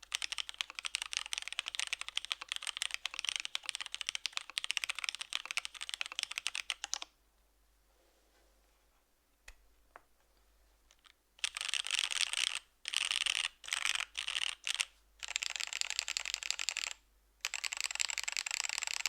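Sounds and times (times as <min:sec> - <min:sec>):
mechanical keyboard typing: 0:00.0 - 0:07.1, 0:11.0 - 0:19.0.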